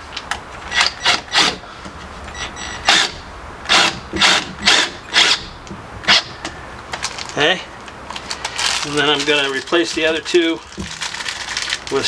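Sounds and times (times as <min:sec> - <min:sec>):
screw being driven by hand: 0:02.8 - 0:06.4.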